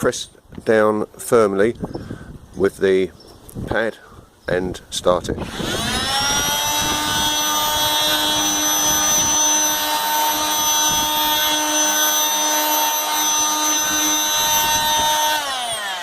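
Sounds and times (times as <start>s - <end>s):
multi-tool motor whine: 5.4s - 16.0s.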